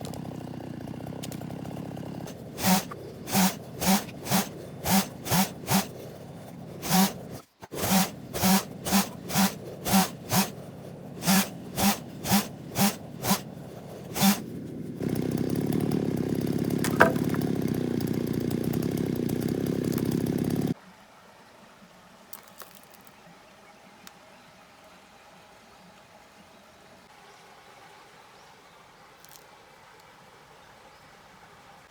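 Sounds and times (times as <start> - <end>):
hand saw cutting wood: 0.0 - 20.8.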